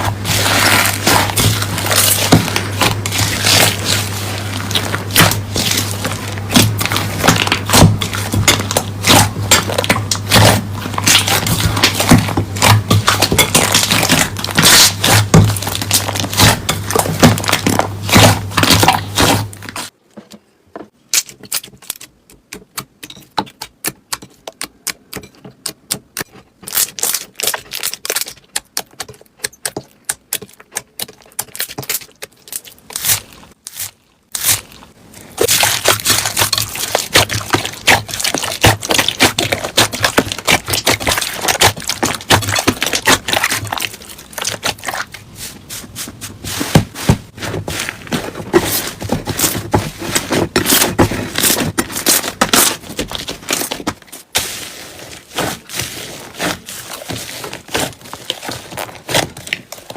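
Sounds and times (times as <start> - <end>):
slime crackling and popping: 0.0 - 19.9, 25.6 - 45.2.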